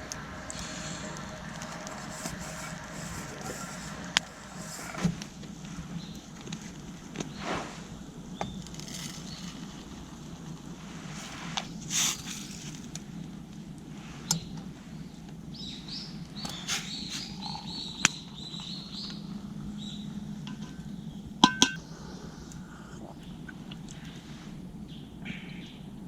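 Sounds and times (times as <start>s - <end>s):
small birds chirping: 0.0s - 10.6s, 14.1s - 26.0s
metal cookware clinking: 21.4s - 21.8s.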